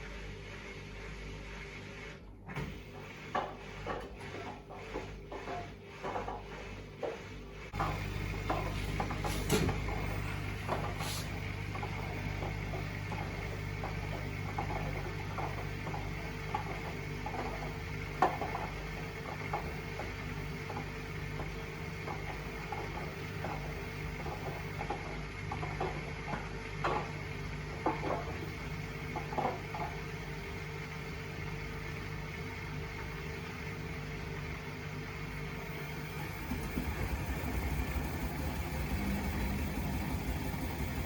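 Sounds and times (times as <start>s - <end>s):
washing machine hum: 0.0s - 41.0s.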